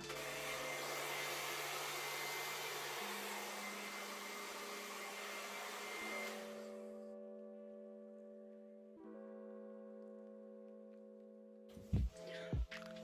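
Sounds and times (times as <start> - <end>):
hair dryer running: 0.0 - 6.8.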